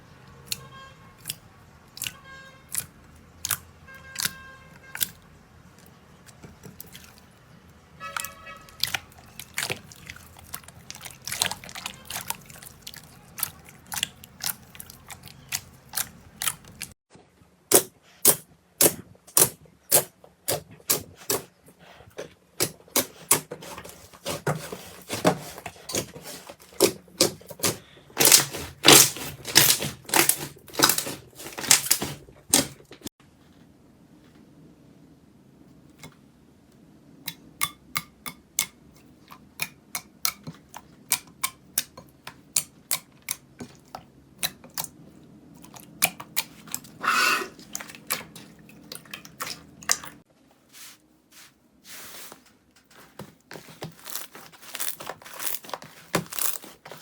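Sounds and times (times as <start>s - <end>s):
slime popping and crackling: 26.8s - 32.8s, 53.9s - 56.8s.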